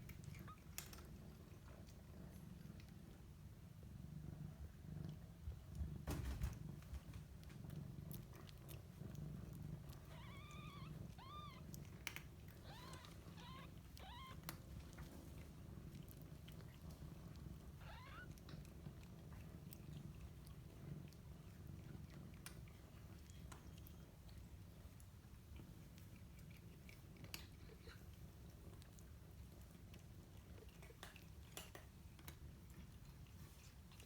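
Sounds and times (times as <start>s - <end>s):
cat purring: 0.0s - 34.0s
kittens mewing: 9.9s - 11.7s, 12.5s - 14.5s, 17.8s - 18.4s.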